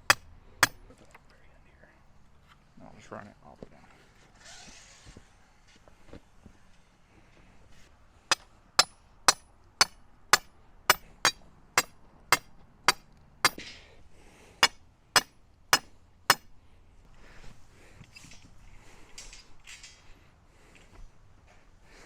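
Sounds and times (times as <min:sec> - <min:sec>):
hammer striking steel stake: 0:00.0 - 0:00.8, 0:08.3 - 0:13.8, 0:14.6 - 0:16.5.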